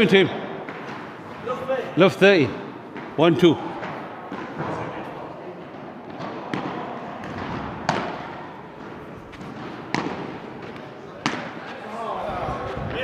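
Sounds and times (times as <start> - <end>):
padel ball struck: 9.4 - 10.3.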